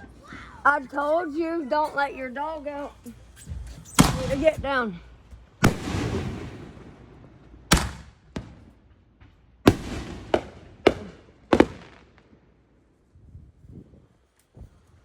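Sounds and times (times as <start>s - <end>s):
faint fireworks pops: 3.0s - 12.4s
fireworks loud bangs: 3.8s - 4.8s, 5.6s - 12.3s.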